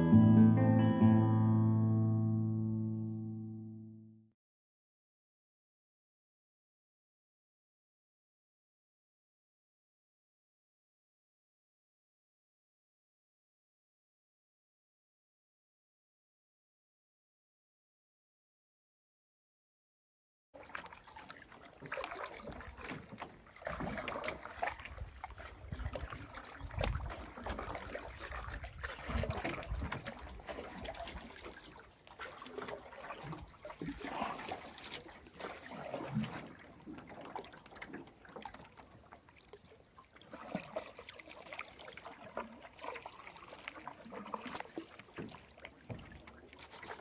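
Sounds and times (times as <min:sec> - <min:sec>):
paddle splashing water: 0:20.6 - 0:47.0.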